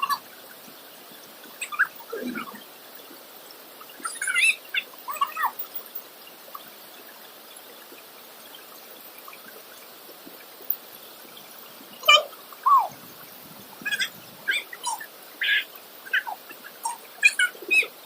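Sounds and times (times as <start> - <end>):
birds calling: 1.4 - 2.7.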